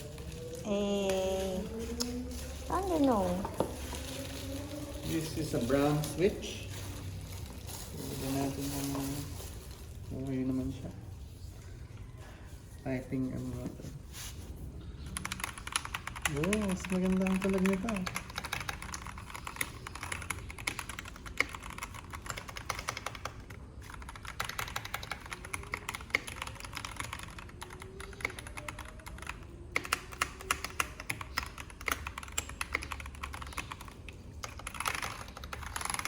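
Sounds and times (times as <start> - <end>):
fast typing on mechanical keyboard: 15.0 - 36.0.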